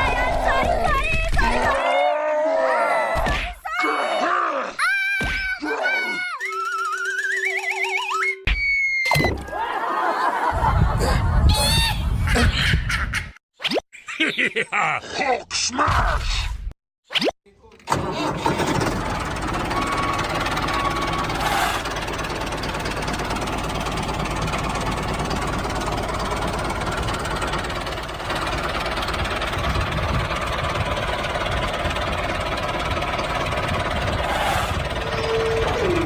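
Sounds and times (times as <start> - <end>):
tractor engine knocking: 17.9 - 36.0.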